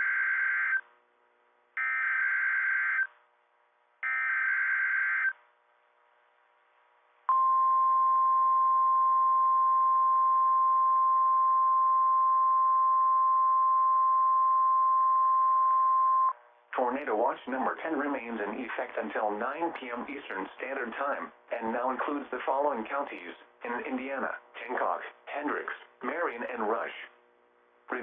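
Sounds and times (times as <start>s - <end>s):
steady warning alarm tone: 0.0s - 0.8s, 1.8s - 3.1s, 4.0s - 5.4s.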